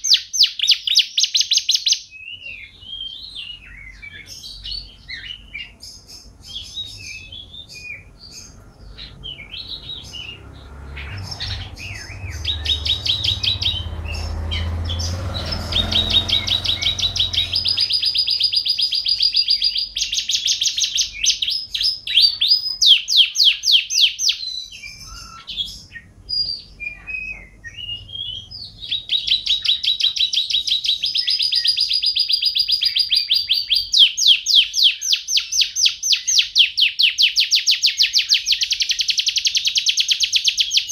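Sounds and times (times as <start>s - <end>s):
canary singing trills: 0.0s - 40.9s.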